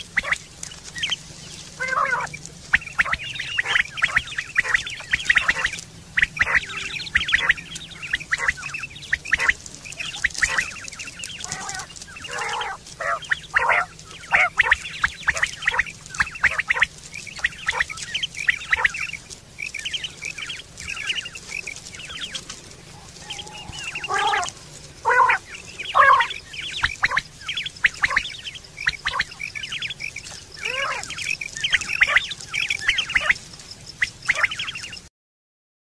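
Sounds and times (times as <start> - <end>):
quail calling: 0.0 - 35.1.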